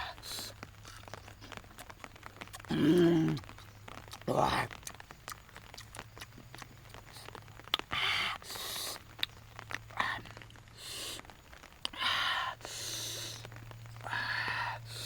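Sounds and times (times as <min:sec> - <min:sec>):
food crunching and rustling: 0:00.0 - 0:12.0
low steady hum: 0:00.0 - 0:15.0.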